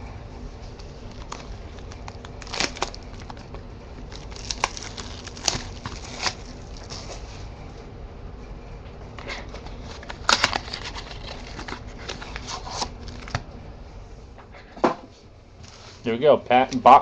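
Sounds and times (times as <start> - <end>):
steady low hum: 0.0 - 17.0
cardboard and plastic wrap crinkling: 0.7 - 7.5, 9.3 - 13.4.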